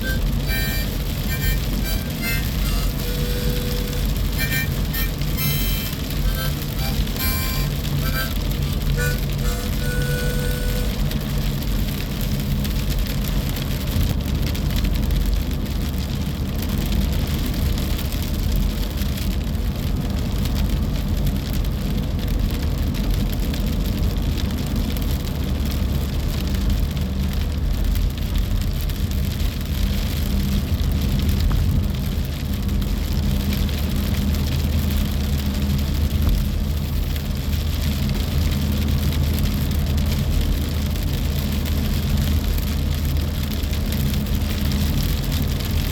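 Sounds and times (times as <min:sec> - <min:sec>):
wind and rain rushing: 0:10.9 - 0:45.9.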